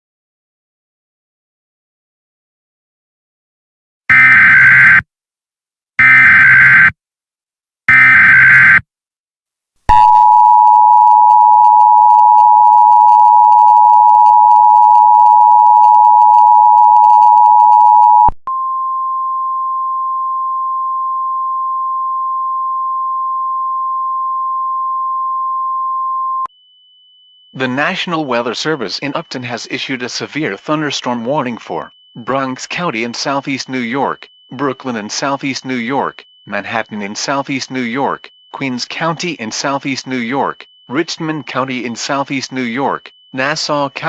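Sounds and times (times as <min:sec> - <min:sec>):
steady alert tone: 0:27.6 - 0:44.0
two-tone attention signal: 0:30.4 - 0:44.0
digital header bursts: 0:32.2 - 0:44.0.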